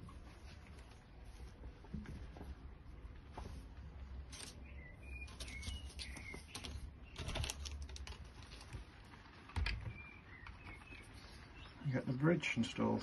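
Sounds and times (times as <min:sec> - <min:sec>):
bird chirps: 0:04.5 - 0:07.4, 0:09.7 - 0:12.4
small plastic parts clicking: 0:05.3 - 0:08.8.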